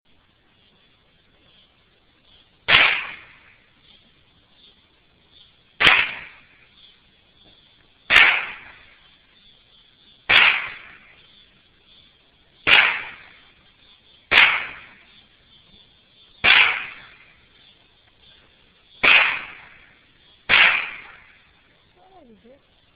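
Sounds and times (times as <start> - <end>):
rifle shots with echo: 2.7 - 3.6, 5.8 - 6.5, 8.1 - 8.9, 10.3 - 11.2, 12.6 - 13.5, 14.3 - 15.1, 16.4 - 17.3, 19.0 - 21.5.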